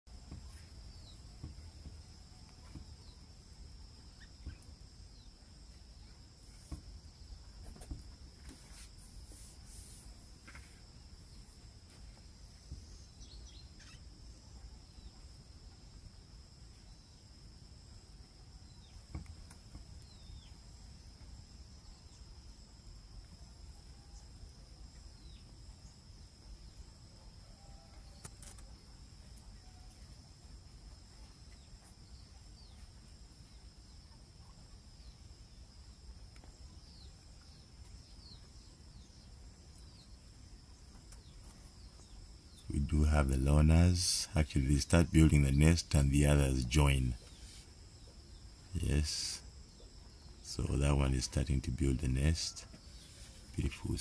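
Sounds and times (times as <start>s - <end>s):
high-pitched insect trill: 0.1s - 54.0s
short bird chirps: 13.3s - 14.1s.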